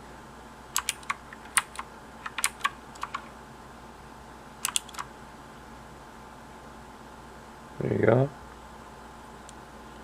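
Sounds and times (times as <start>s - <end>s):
mechanical keyboard key clicks: 0.8s - 3.2s, 4.6s - 5.1s.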